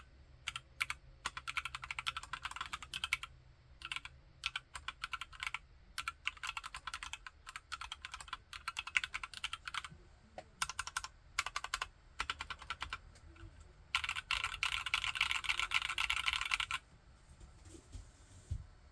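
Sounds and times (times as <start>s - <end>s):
mechanical keyboard typing: 0.5s - 9.9s, 10.6s - 13.0s, 13.9s - 16.8s.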